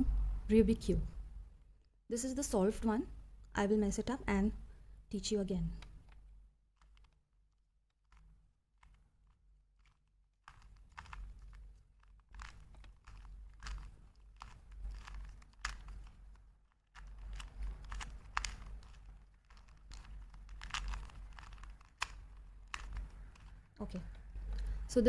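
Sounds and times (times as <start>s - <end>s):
puzzle cube clicking and rattling: 5.2s - 25.0s.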